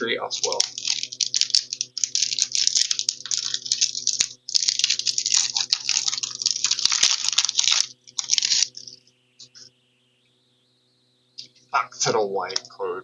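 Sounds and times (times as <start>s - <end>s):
foil wrapper crinkling: 0.3s - 9.0s.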